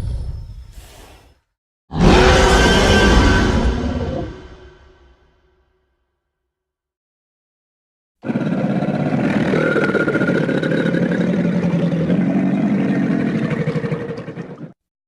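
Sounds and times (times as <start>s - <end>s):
monster growl: 1.9s - 4.8s, 8.2s - 14.1s.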